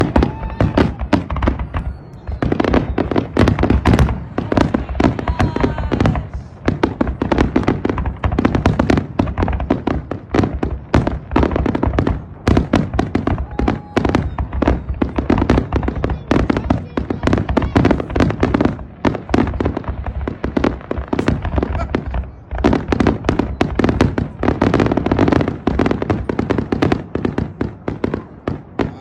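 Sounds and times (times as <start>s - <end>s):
fireworks bangs and crackling: 0.0s - 29.0s
whistling fireworks: 0.0s - 29.0s.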